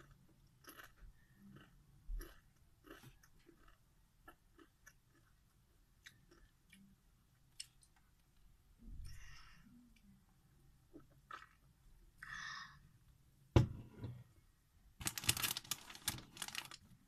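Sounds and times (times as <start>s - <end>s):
chips being chewed: 0.0s - 6.8s.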